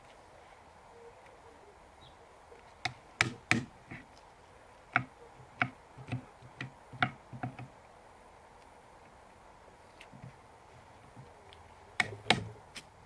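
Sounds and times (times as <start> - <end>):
sharp knocks and taps: 2.8 - 4.0, 4.9 - 7.7, 12.0 - 12.5.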